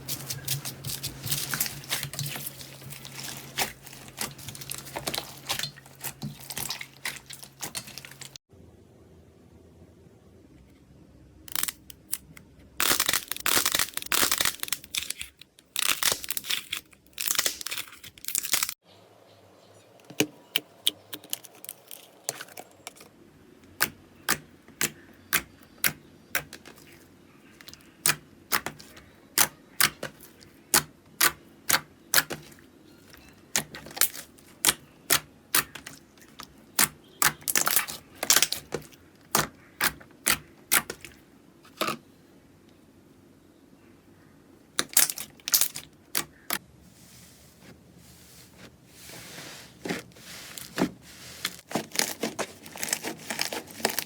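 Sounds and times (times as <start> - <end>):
slime crackling: 0.0 - 8.4, 33.5 - 41.2, 44.8 - 46.6, 49.5 - 54.0.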